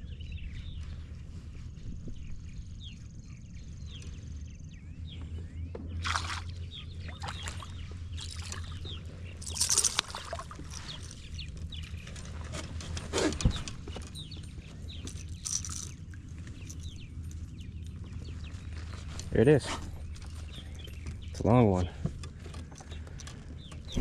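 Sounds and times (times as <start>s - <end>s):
birds chirping faintly: 0.0s - 24.0s
fish splashing in water: 6.0s - 8.8s, 9.4s - 10.8s.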